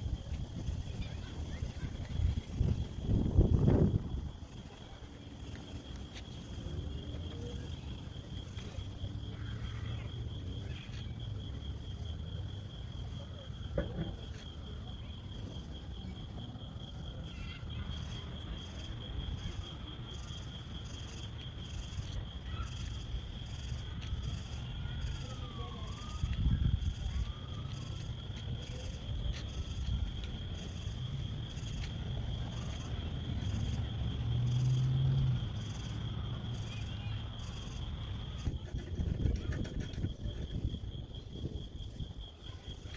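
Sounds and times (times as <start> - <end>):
insects trilling: 0.0 - 42.9.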